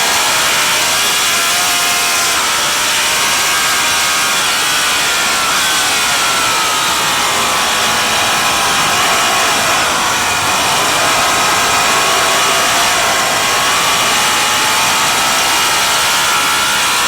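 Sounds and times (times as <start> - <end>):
racing motorcycle engine: 0.0 - 17.0
steady rush of noise: 0.0 - 17.0.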